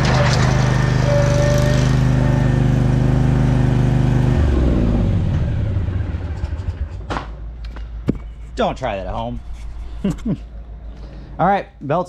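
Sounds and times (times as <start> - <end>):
mower engine running and winding down: 0.0 - 7.0.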